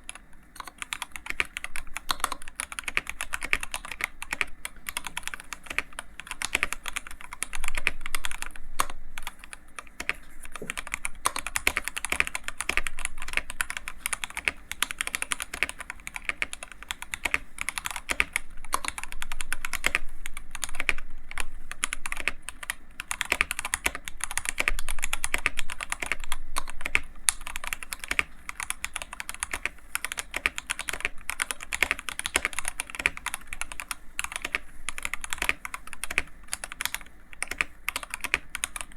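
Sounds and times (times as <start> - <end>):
mechanical keyboard typing: 0.0 - 38.9.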